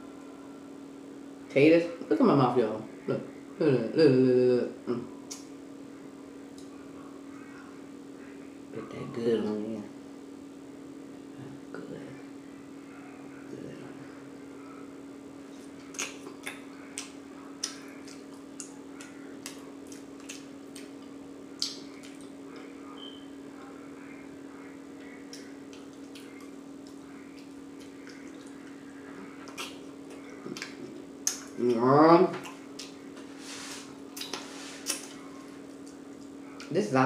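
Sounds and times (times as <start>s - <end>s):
steady low hum: 0.0s - 37.0s
wet mouth chewing smacks: 15.6s - 23.2s, 25.0s - 31.6s, 32.3s - 33.3s, 34.0s - 36.7s.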